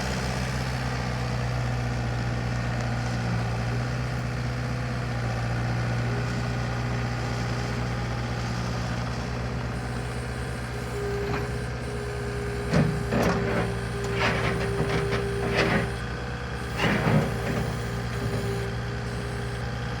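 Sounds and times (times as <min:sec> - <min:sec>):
diesel engine running: 0:00.0 - 0:20.0
steady whine: 0:09.8 - 0:16.0.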